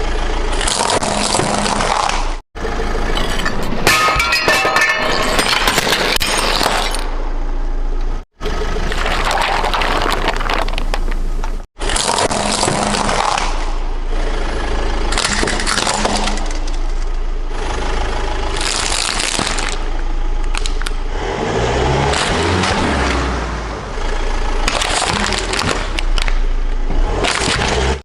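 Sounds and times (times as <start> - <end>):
car engine under load: 0.0 - 28.0
tyres crushing objects: 0.6 - 7.2, 8.8 - 14.0, 18.5 - 21.0, 24.6 - 28.0.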